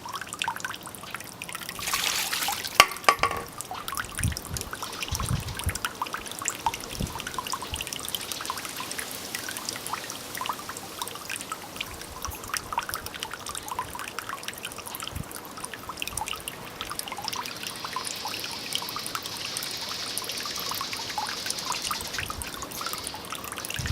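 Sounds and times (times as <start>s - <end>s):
water splashing into stone basin: 1.6s - 4.5s.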